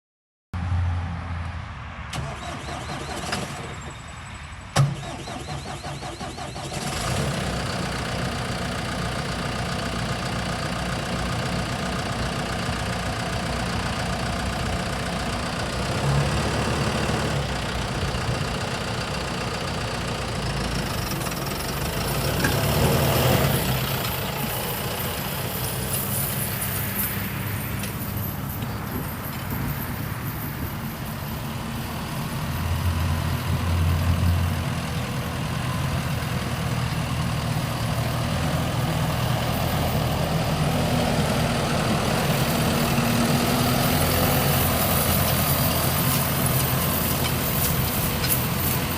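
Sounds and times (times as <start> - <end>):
tractor diesel engine idling: 2.1 - 48.9.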